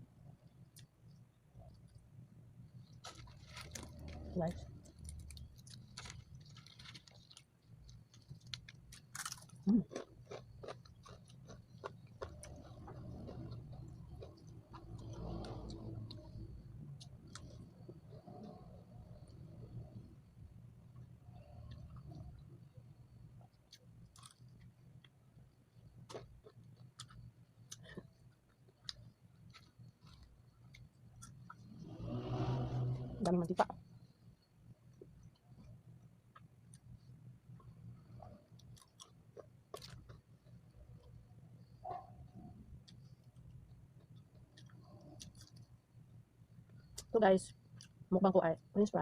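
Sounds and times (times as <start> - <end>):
low steady hum: 0.0 - 49.0
person chewing food: 2.8 - 19.7, 25.9 - 31.7, 38.2 - 41.2
chewing clicks and smacks: 4.8 - 15.6.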